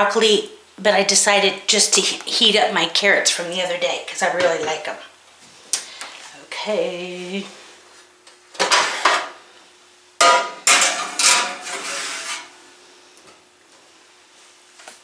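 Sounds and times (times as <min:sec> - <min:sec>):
kitchenware clattering: 0:08.6 - 0:09.4, 0:10.2 - 0:12.6.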